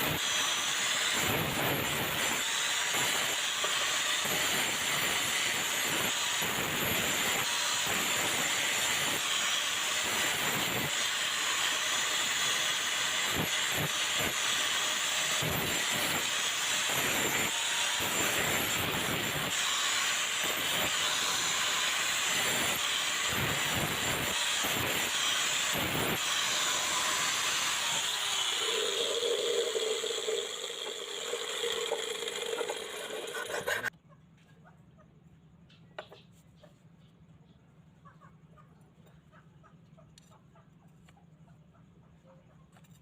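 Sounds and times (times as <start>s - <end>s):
abrasive grinding on steel: 0.0s - 33.9s.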